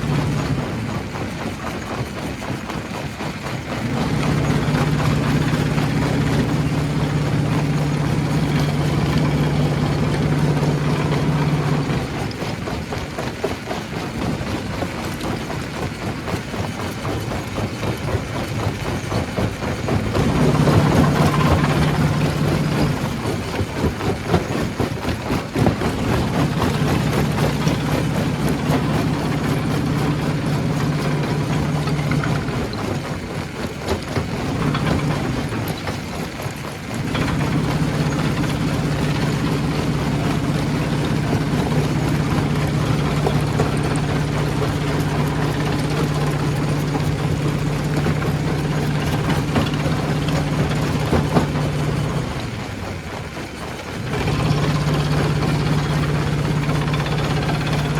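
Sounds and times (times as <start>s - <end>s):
stone crusher rattling rock: 0.0s - 57.9s.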